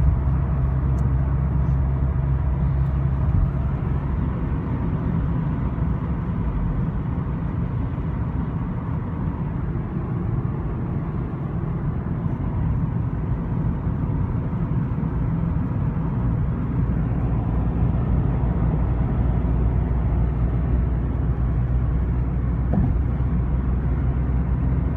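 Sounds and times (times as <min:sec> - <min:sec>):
road and drivetrain rumble: 0:00.0 - 0:24.9.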